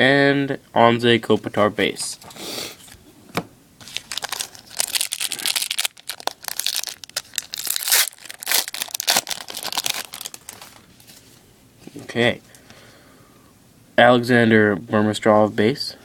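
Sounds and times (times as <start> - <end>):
foil wrapper crinkling: 3.8 - 11.2.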